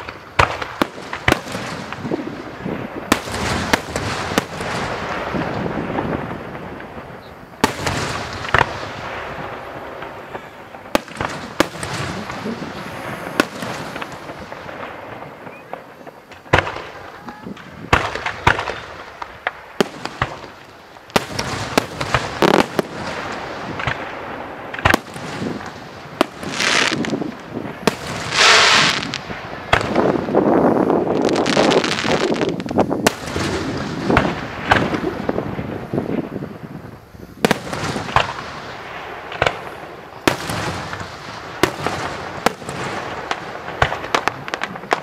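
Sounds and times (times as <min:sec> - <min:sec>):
fireworks bangs: 0:00.0 - 0:45.0
fireworks hissing bursts: 0:00.0 - 0:45.0.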